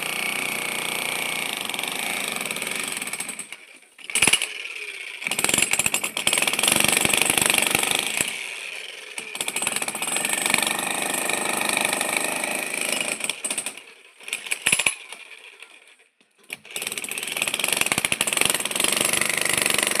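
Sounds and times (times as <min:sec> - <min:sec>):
breaker hammer pounding concrete: 0:05.3 - 0:08.3, 0:09.2 - 0:15.0, 0:16.5 - 0:20.0.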